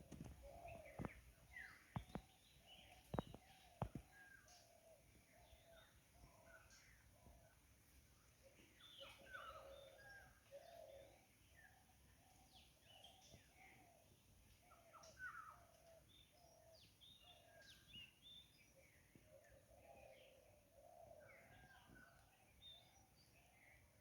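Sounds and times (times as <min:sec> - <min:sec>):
birds whistling and chirping: 0:00.1 - 0:04.7.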